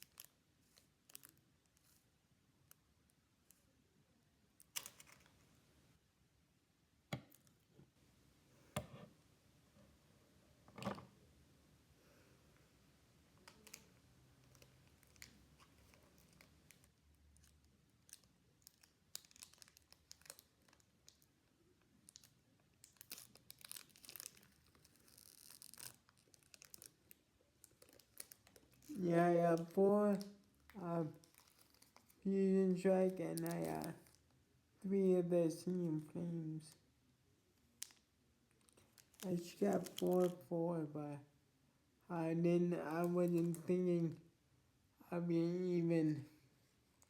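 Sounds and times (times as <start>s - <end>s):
trading cards rustling: 32.8s - 34.2s, 38.6s - 40.4s, 42.8s - 43.8s.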